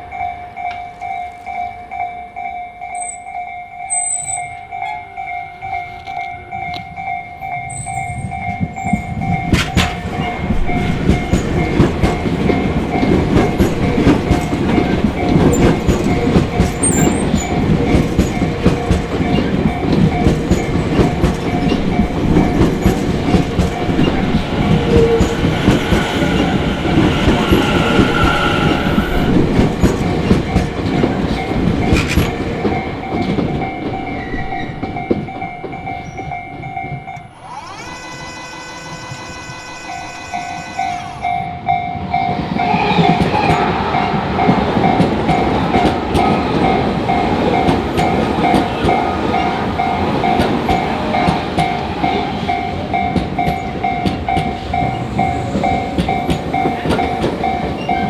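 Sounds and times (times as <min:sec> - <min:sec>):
level crossing alarm ringing: 0:00.3 - 0:42.1
train wheels clattering over rail joints: 0:07.6 - 0:37.3.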